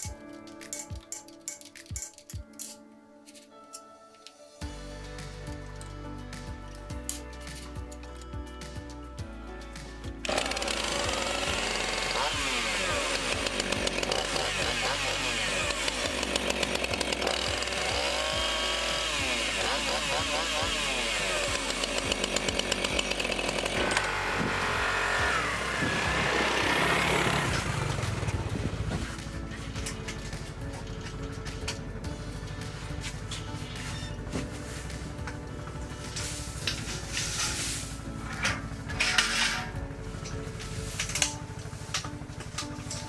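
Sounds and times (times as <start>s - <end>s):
background music: 0.0s - 43.0s
chainsaw revving: 10.2s - 29.5s.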